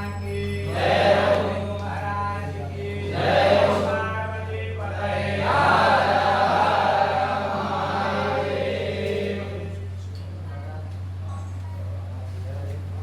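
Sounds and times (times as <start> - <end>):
low electrical hum: 0.0 - 13.0
group chanting in unison: 0.6 - 9.8.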